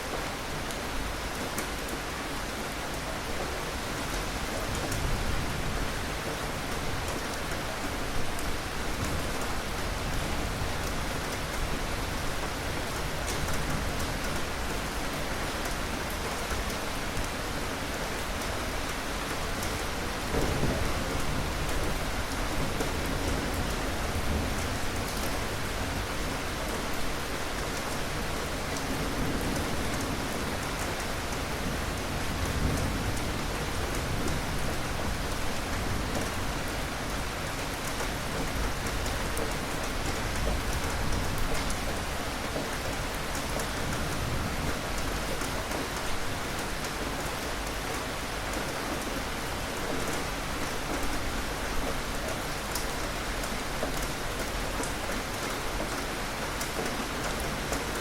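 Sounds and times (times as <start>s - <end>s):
steady rain hiss: 0.0s - 58.0s
raindrop ticks: 37.0s - 58.0s.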